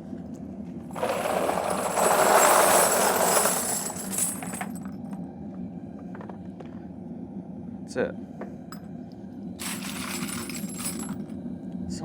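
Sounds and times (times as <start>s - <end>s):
metal casings clinking: 1.0s - 4.9s, 9.6s - 11.3s.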